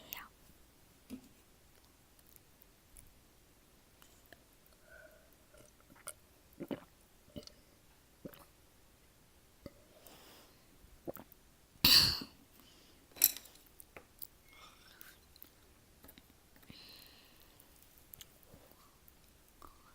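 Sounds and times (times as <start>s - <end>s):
person drinking and swallowing: 5.5s - 7.6s, 11.0s - 11.3s.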